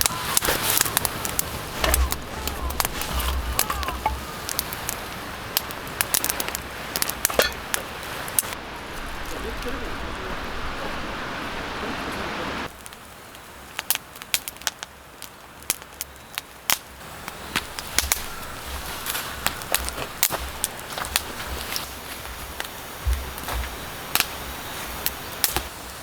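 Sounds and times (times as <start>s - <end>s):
steady rushing noise: 0.0s - 12.7s
campfire crackling and popping: 0.0s - 26.0s.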